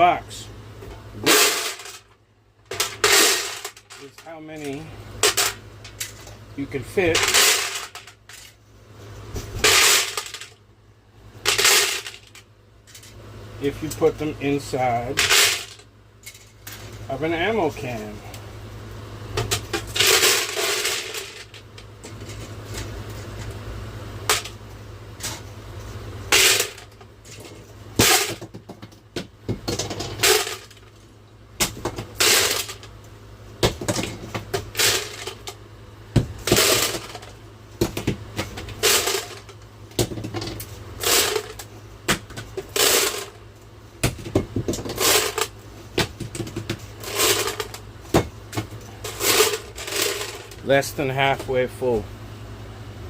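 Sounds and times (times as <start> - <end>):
steady low hum: 0.0 - 53.0
cartridges clattering into metal can: 1.2 - 2.1, 2.7 - 6.3, 7.1 - 8.6, 9.6 - 10.6, 11.4 - 13.2, 15.1 - 16.9, 19.4 - 22.9, 24.2 - 24.6, 26.3 - 28.6, 29.7 - 30.9, 31.6 - 32.9, 33.8 - 35.6, 36.4 - 37.4, 38.0 - 41.7, 42.6 - 43.4, 44.2 - 45.6, 46.4 - 47.8, 48.5 - 50.6.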